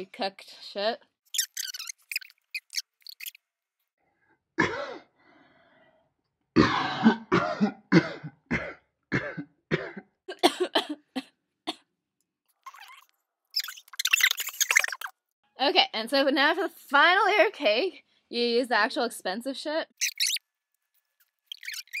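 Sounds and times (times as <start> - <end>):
person coughing: 4.6 - 5.1, 6.6 - 11.8.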